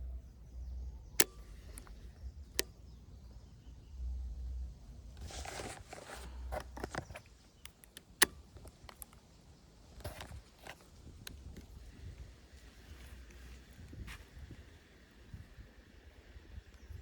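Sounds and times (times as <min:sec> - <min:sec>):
handling rustling and clicks: 0:00.5 - 0:03.0, 0:04.5 - 0:14.4.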